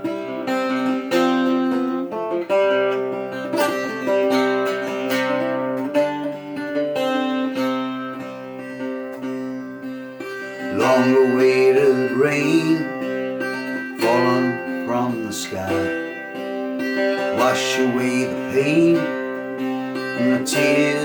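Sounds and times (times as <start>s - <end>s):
cittern plucked and strummed: 0.0s - 21.0s.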